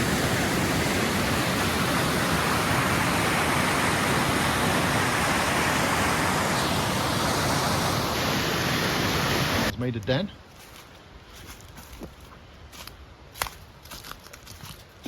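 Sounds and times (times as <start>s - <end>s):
water rushing over rocks: 0.0s - 9.7s.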